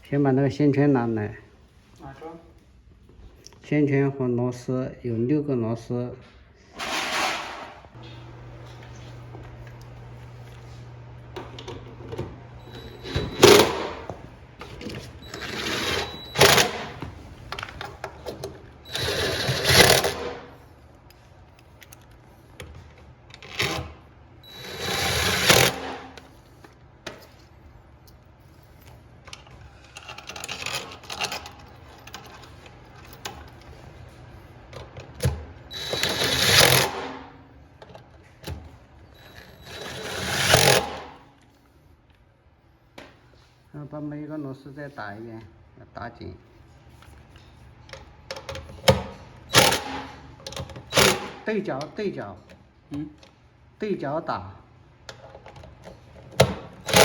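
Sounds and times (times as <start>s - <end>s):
electric screwdriver driving screws: 13.1s - 14.0s, 18.9s - 20.4s, 24.5s - 26.0s, 35.8s - 37.2s, 39.4s - 41.1s.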